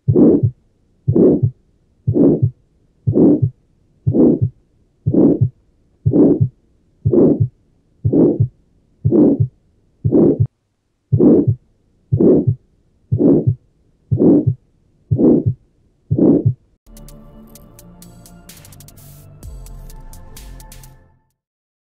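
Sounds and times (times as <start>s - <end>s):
heart murmur: 0.0s - 10.5s, 11.1s - 16.6s
heartbeat: 0.0s - 10.5s, 11.1s - 16.6s.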